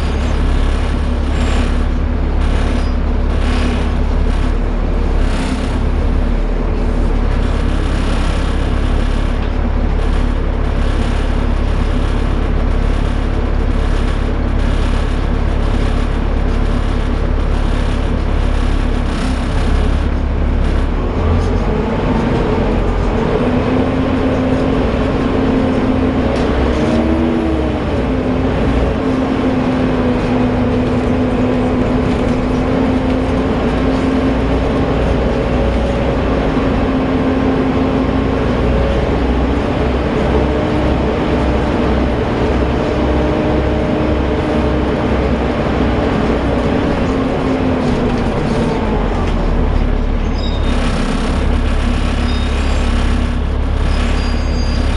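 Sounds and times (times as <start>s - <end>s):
bus engine whine: 0.0s - 54.9s
low engine rumble: 0.0s - 54.9s.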